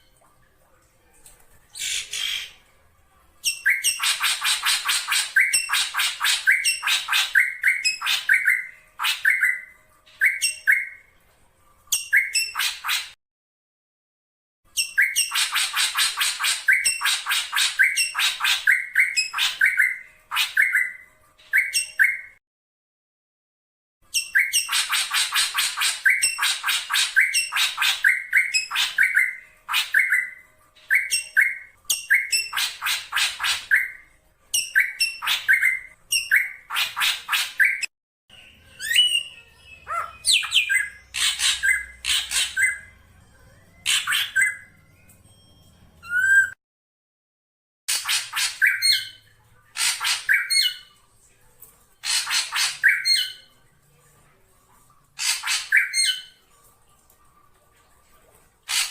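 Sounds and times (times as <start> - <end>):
bird harsh raspy calls: 52.0 - 53.4.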